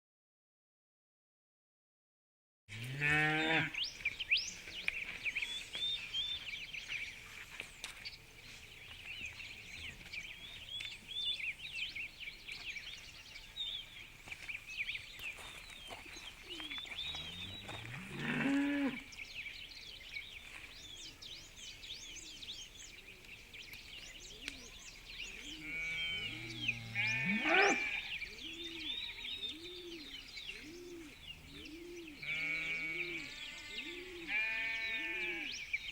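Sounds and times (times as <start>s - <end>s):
cattle mooing: 2.8s - 3.7s, 17.3s - 19.0s, 25.7s - 28.1s
sheep bleating: 25.6s - 28.1s, 32.2s - 35.5s.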